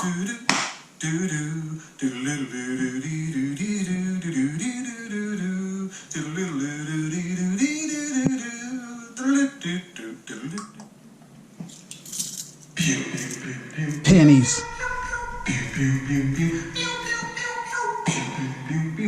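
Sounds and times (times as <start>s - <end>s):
man singing long notes: 13.7s - 19.0s.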